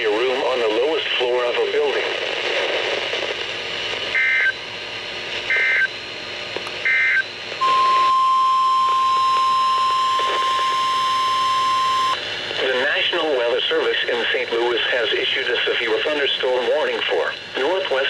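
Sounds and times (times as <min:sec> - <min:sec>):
faint radio hiss: 0:00.0 - 0:18.0
steady warning alarm tone: 0:06.9 - 0:12.2.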